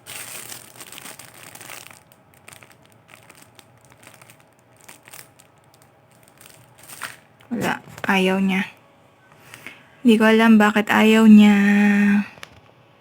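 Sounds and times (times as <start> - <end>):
faint handling rustling and clicks: 2.6 - 8.2.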